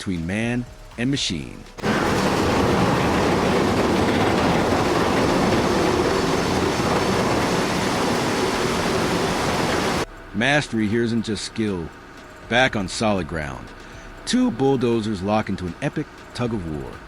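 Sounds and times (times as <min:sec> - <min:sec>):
loud mechanical rumble: 0:01.8 - 0:14.2.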